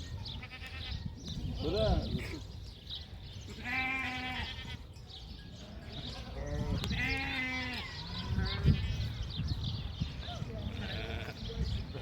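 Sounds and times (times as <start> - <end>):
sheep bleating: 0.4 - 1.0, 3.5 - 4.9, 6.1 - 9.1, 10.6 - 11.5.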